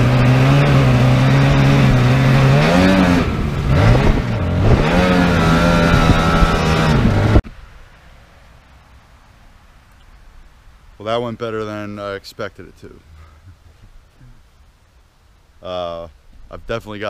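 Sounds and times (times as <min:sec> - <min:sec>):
jet-ski engine revving: 0:00.0 - 0:07.4.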